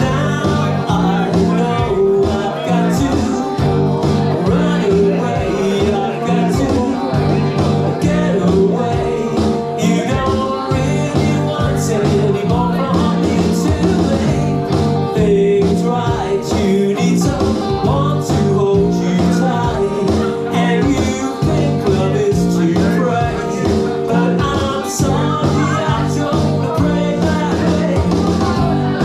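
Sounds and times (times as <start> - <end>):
acoustic guitars strummed: 0.0 - 29.0
bass line: 0.0 - 29.0
person singing: 0.0 - 29.0.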